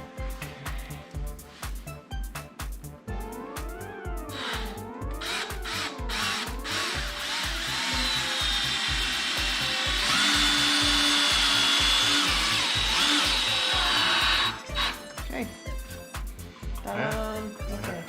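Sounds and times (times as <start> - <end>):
cordless drill driving screw into wood: 4.3 - 15.0.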